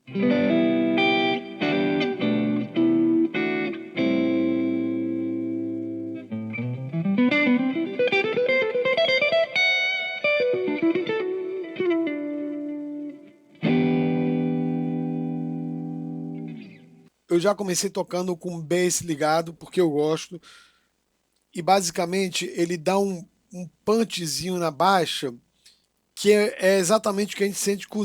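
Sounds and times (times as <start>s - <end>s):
electric guitar chords and notes: 0.0s - 17.1s.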